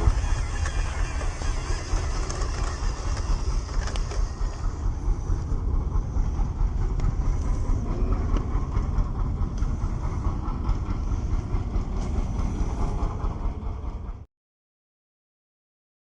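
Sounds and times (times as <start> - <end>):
toy truck driving over rough ground: 0.0 - 10.7.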